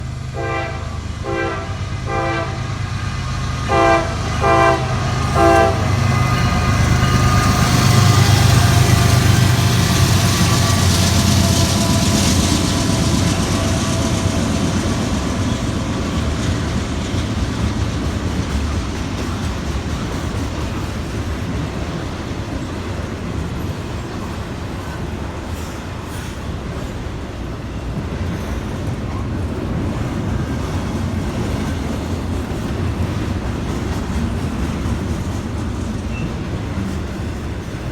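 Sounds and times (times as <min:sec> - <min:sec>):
train passing with heavy rumble: 0:00.0 - 0:37.9
train horn blasts: 0:00.3 - 0:14.7.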